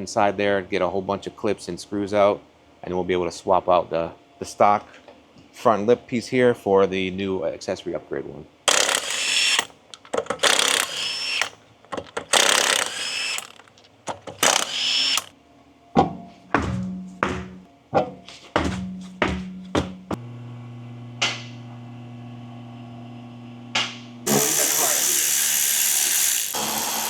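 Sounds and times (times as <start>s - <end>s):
cordless power tool running: 8.7s - 9.7s, 10.4s - 11.5s, 12.3s - 13.7s, 14.4s - 15.3s, 20.2s - 27.0s
knocks and clicks of parts handled: 8.7s - 15.3s.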